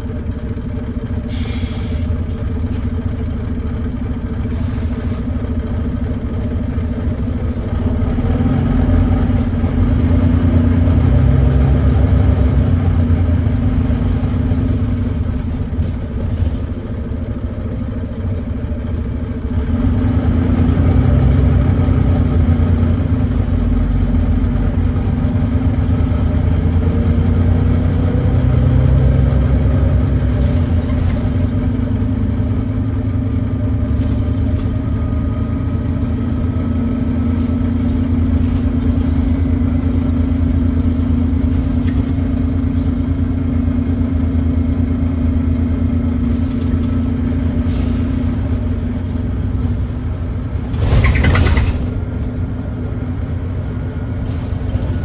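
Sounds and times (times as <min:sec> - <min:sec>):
bus diesel engine under load: 0:00.0 - 0:55.0.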